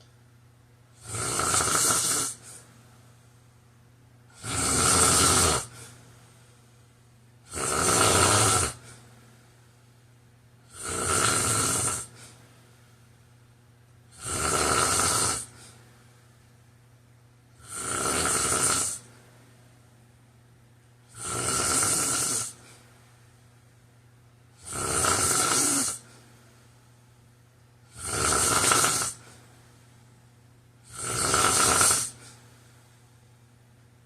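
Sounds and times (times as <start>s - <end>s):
man snoring: 1.0s - 2.6s, 4.3s - 5.9s, 7.4s - 9.0s, 10.7s - 12.2s, 14.1s - 15.7s, 17.6s - 19.1s, 21.1s - 22.8s, 24.6s - 26.1s, 27.9s - 29.3s, 30.8s - 32.4s.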